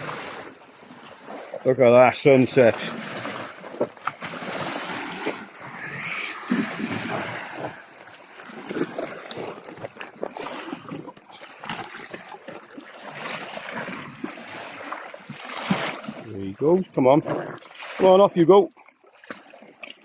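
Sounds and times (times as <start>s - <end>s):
surf washing over rocks: 0.0s - 12.3s
water splashing in shallows: 0.0s - 20.0s.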